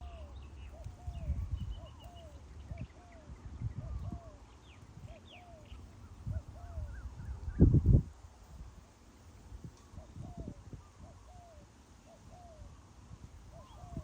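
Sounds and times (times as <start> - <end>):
doves cooing: 0.0 - 7.5, 9.8 - 14.0
small birds chirping: 0.0 - 14.0.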